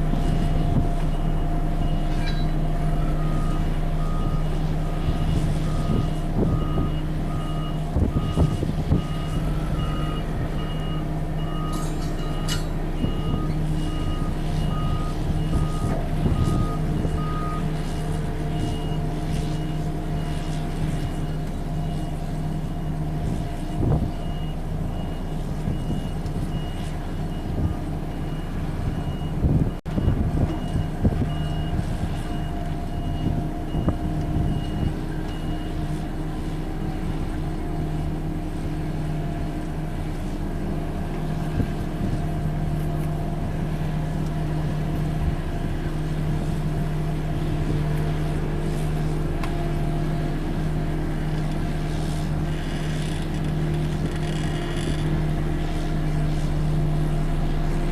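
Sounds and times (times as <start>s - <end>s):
reversing alarm beeping: 0.0s - 36.0s
diesel engine running: 0.0s - 57.9s.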